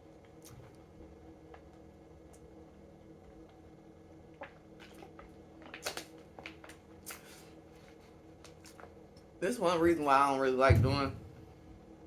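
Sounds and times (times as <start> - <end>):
low electrical hum: 0.0 - 12.0
wet eating mouth sounds: 4.3 - 7.4.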